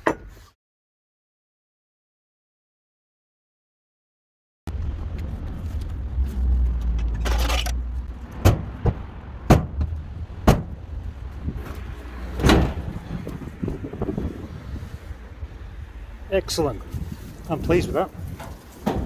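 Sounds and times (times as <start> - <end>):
low rumble: 4.7 - 17.5
sharp knocks: 8.4 - 10.8.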